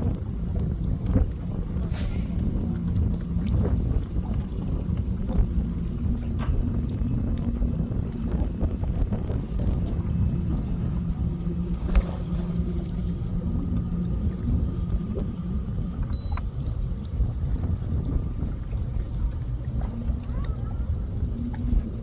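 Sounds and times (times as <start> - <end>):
boat engine rumble: 0.0 - 22.0
short high beep: 16.2 - 16.4.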